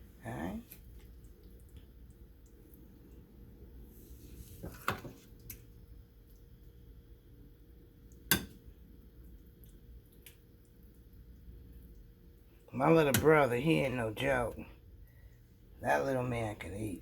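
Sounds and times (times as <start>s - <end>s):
faint steady hum: 0.0s - 17.0s.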